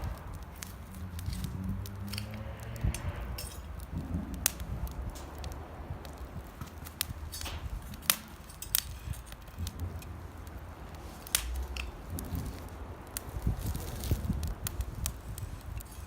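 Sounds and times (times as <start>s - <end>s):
sharp pops from fire: 0.0s - 16.0s
wood fire crackling: 0.0s - 16.0s.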